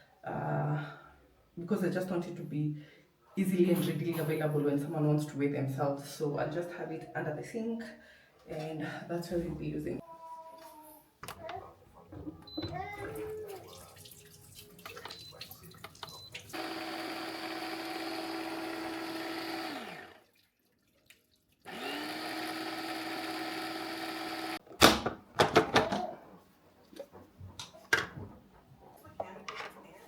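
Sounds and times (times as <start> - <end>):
electric blender running: 16.5 - 20.2, 21.7 - 24.6
clatter of knocks: 24.9 - 26.1.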